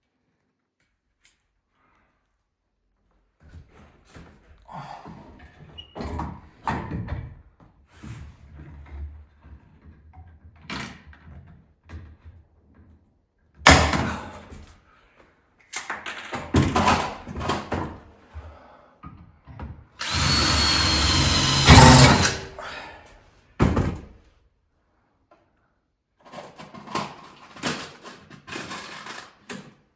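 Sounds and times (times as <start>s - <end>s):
knocks and clunks: 20.0s - 22.5s
power drill whining: 20.0s - 22.6s.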